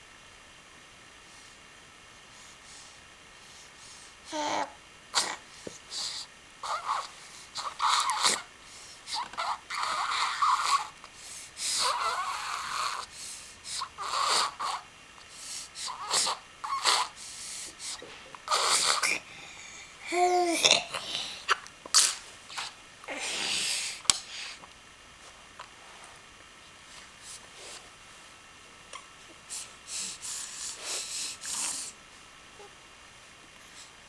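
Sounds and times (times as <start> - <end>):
baby sneezing and snuffling: 5.1 - 8.5, 15.8 - 17.2, 17.8 - 19.2, 20.4 - 24.6.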